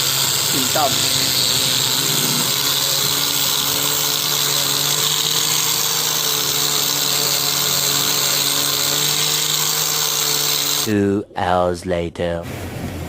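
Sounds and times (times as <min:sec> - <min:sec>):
power tool running steadily: 0:00.0 - 0:11.0.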